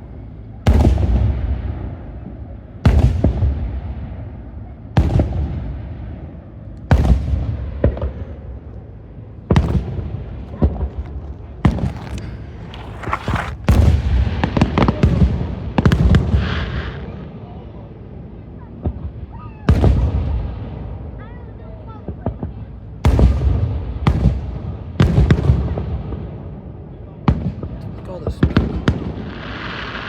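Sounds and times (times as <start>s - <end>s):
fireworks exploding: 0.7s - 4.2s, 5.0s - 5.9s, 6.9s - 8.4s, 9.4s - 17.3s, 18.8s - 20.8s, 27.3s - 30.0s
fireworks crackling: 9.5s - 17.1s, 28.0s - 30.0s.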